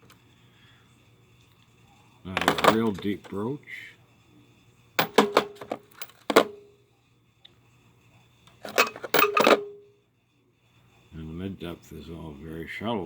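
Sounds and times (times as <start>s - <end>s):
steel sockets clinking: 2.4s - 3.0s, 5.0s - 6.6s, 8.6s - 9.8s.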